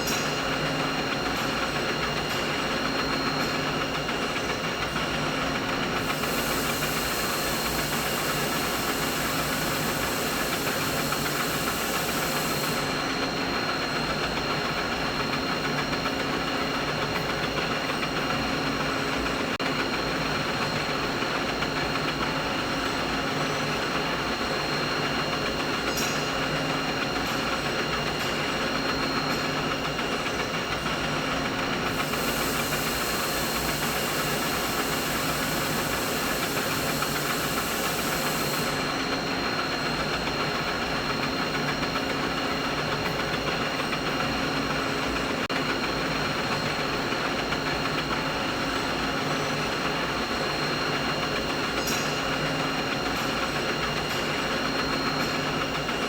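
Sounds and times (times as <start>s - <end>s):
machine noise with whining tones: 0.0s - 56.0s
high hiss: 6.0s - 12.9s, 31.9s - 39.0s.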